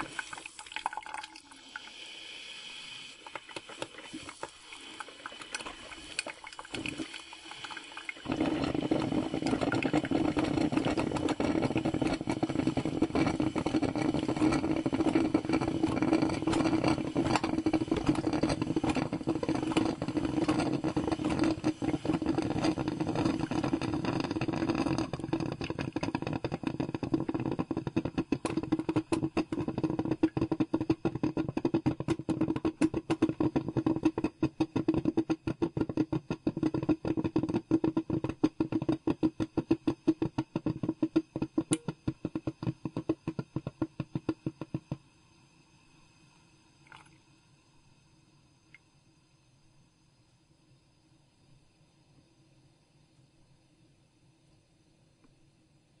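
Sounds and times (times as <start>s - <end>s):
coffee brewer bubbling: 0.0s - 45.0s, 46.8s - 47.2s.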